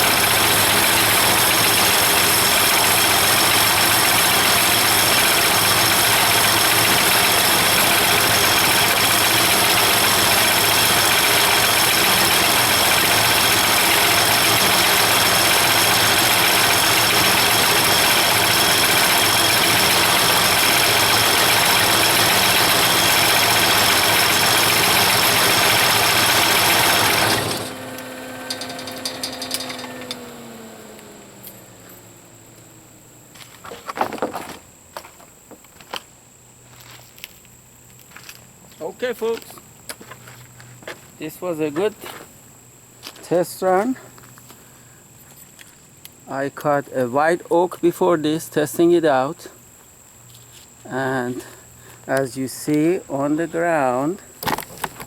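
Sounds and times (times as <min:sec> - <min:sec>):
machine hum winding down: 0:00.0 - 0:33.2
diesel engine running: 0:00.0 - 0:33.5.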